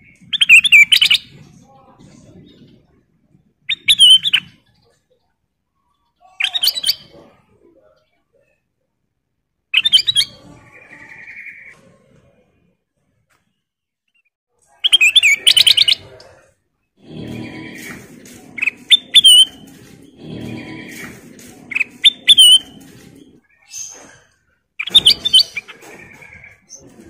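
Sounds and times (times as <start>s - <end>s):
bulbul chirping and whistling: 17.3s - 22.9s, 24.8s - 25.8s.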